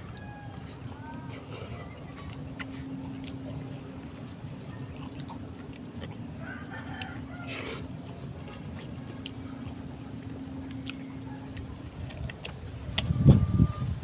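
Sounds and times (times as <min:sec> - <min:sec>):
rooster crowing: 0:00.0 - 0:00.8, 0:06.4 - 0:07.8
steady low hum: 0:00.0 - 0:14.0.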